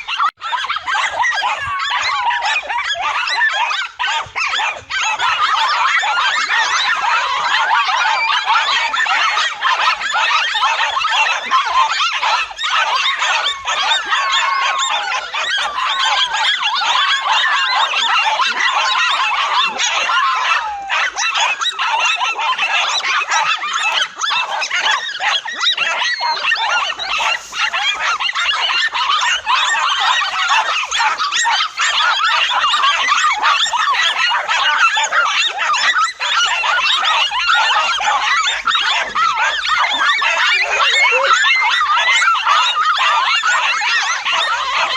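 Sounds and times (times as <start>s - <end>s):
pack of dogs barking: 0.0s - 44.9s.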